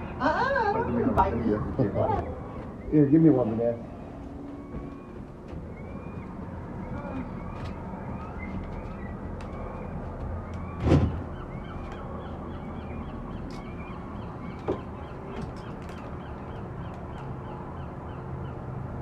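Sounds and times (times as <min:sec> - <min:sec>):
seagulls calling: 0:00.0 - 0:19.0
loud thump: 0:10.8 - 0:11.2.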